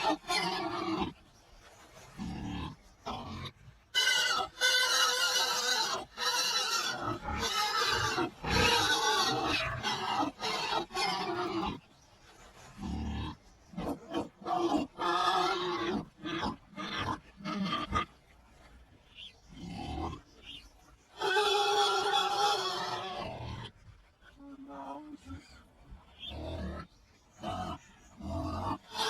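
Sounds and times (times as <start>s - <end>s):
pigs squealing: 0.0s - 1.2s, 2.2s - 11.8s, 12.8s - 18.2s, 21.2s - 23.8s, 26.2s - 29.0s
pigs grunting: 0.0s - 1.4s, 2.1s - 11.9s, 12.7s - 18.2s, 19.5s - 24.1s, 24.8s - 29.0s.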